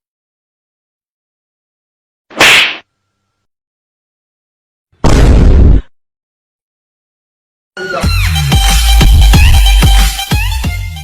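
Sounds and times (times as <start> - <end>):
explosion blast with low boom: 5.0 - 5.9.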